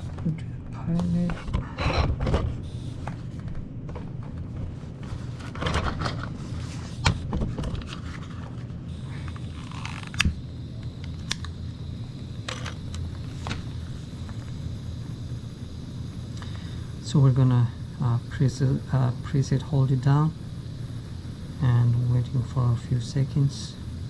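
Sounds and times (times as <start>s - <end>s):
steady low hum: 0.0s - 24.0s
valve knob clicking and scraping: 9.3s - 11.5s.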